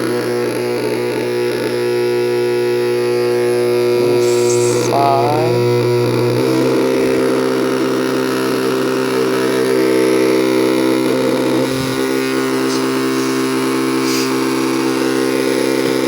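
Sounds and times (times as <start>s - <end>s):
small electric motor whining: 3.1s - 8.0s, 11.6s - 16.0s.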